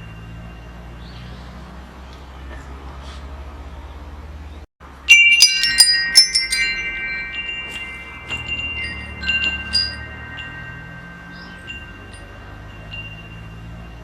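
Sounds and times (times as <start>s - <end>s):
metal wind chimes ringing: 0.0s - 1.9s, 4.8s - 14.0s.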